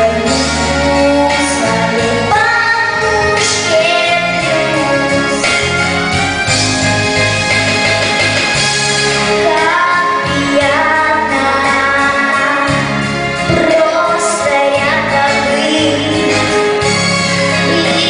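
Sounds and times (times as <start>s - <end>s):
woman singing: 0.0s - 5.6s, 9.4s - 12.9s, 13.5s - 16.6s, 17.6s - 18.0s
instrumental accompaniment: 0.0s - 18.0s
steady bass line: 0.0s - 18.0s.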